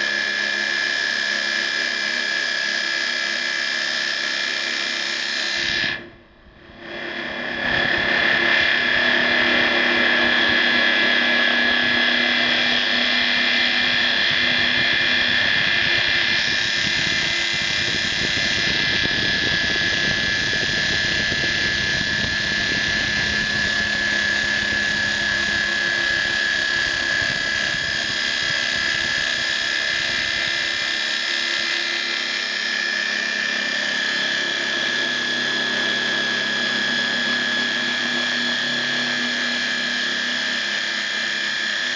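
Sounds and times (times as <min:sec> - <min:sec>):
router spindle motor whining: 0:00.0 - 0:41.9.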